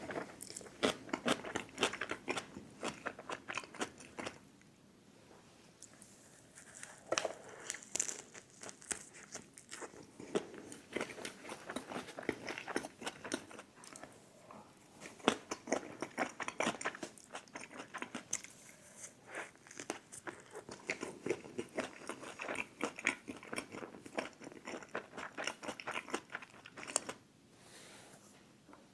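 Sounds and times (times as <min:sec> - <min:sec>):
person chewing crisp food: 0:00.0 - 0:04.4, 0:06.6 - 0:14.1, 0:15.0 - 0:27.2.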